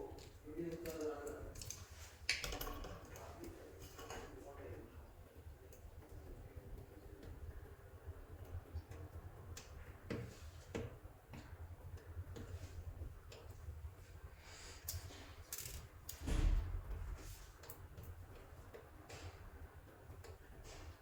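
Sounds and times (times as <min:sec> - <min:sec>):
dull thump: 0:16.2 - 0:17.1.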